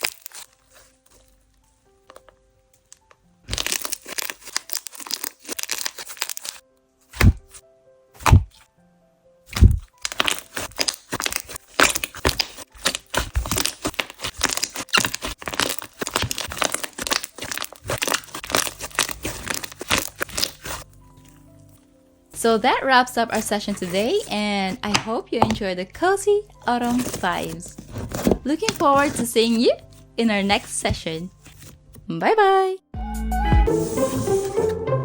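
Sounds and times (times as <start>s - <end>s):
slime squished by hand: 0.0s - 1.0s, 3.5s - 7.6s, 8.2s - 8.6s, 9.5s - 21.8s, 23.3s - 25.6s
soft low thumps: 8.2s - 8.5s, 9.6s - 9.9s.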